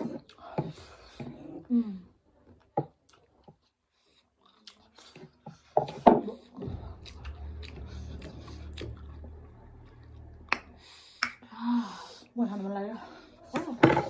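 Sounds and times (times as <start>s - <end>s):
person chewing noodles: 3.0s - 11.4s
steady low hum: 6.6s - 11.6s.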